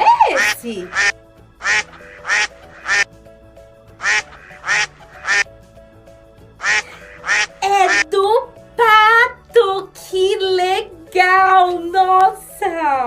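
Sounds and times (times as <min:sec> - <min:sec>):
soft background music: 0:00.0 - 0:13.0
duck quacking: 0:00.3 - 0:03.1, 0:04.0 - 0:05.4, 0:06.6 - 0:08.0.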